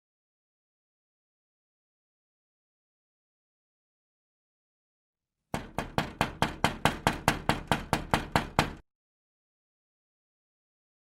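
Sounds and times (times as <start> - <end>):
rapid even knocking: 5.6 - 8.8.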